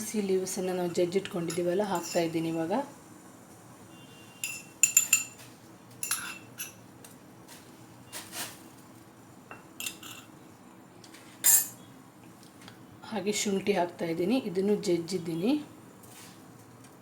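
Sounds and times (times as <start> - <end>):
metal spoon clinking on steel vessels: 0.7 - 2.7, 4.4 - 5.4, 6.0 - 6.8, 9.5 - 10.3, 11.4 - 11.8.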